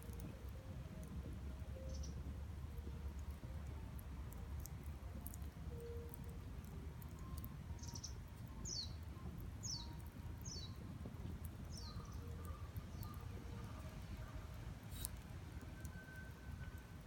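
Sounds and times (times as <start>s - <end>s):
wood fire crackling: 0.0s - 17.0s
bird chirping: 7.2s - 9.0s, 9.6s - 10.8s, 11.7s - 13.3s.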